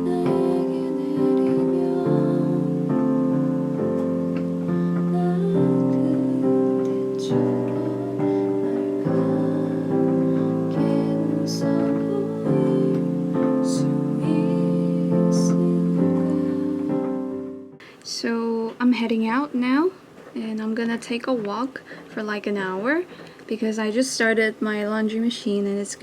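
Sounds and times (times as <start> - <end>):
piano playing sustained chords: 0.0 - 17.8.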